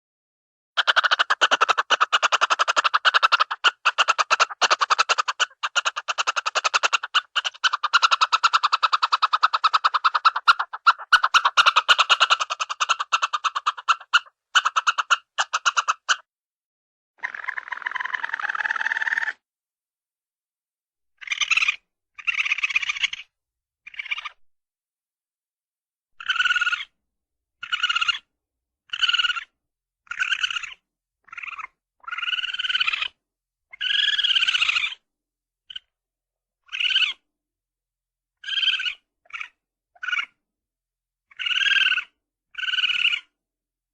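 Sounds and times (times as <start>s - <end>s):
cartoon squirrel chattering: 0.8s - 16.3s, 17.2s - 19.4s, 21.2s - 23.3s, 23.9s - 24.4s, 26.2s - 26.9s, 27.6s - 28.3s, 28.9s - 35.0s, 36.7s - 37.2s, 38.4s - 40.4s, 41.3s - 43.4s.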